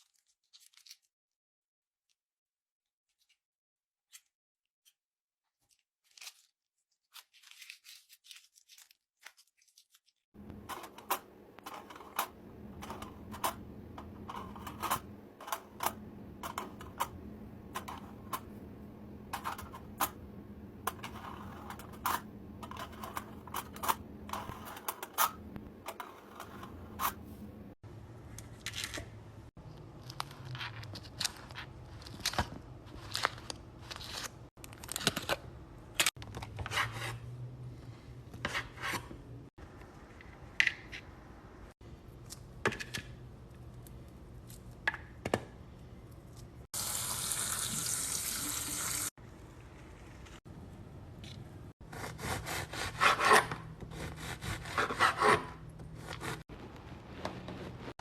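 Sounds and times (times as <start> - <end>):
steady low hum: 10.4 - 28.3.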